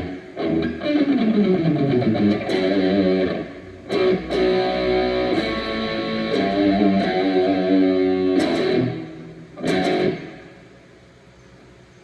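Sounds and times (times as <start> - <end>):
electric guitar notes and chords: 0.0 - 11.0.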